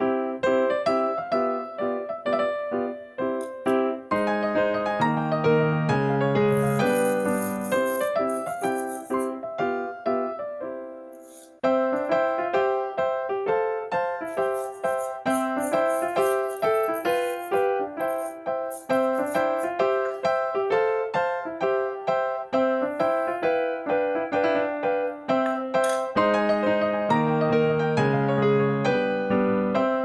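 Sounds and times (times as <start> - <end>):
bouncy keyboard tune: 0.0 - 30.0
shaker-like hiss: 6.5 - 9.3, 11.2 - 11.6, 14.3 - 20.3.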